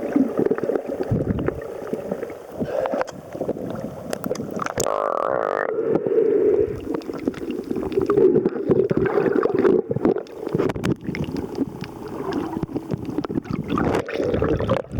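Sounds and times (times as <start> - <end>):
underwater water gurgling: 0.0 - 14.9
underwater clicks and pops: 2.8 - 6.0, 6.8 - 14.9.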